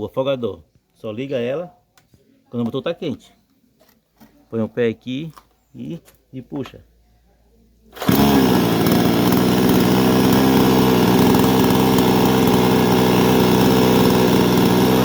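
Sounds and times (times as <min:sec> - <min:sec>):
chainsaw running: 0:08.0 - 0:15.0
chainsaw starter cord pull: 0:08.0 - 0:15.0.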